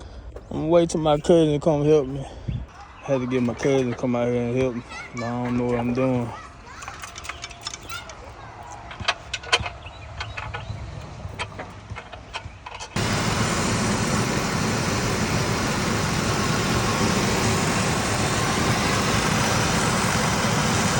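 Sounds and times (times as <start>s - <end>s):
engine running loudly: 13.0s - 20.9s.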